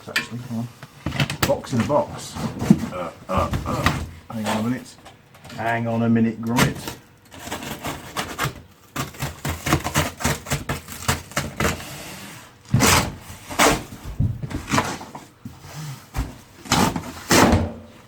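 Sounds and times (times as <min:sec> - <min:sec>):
cardboard scraping against cardboard: 0:01.7 - 0:04.8, 0:06.6 - 0:17.7
cardboard knocks and rustles: 0:13.9 - 0:15.3.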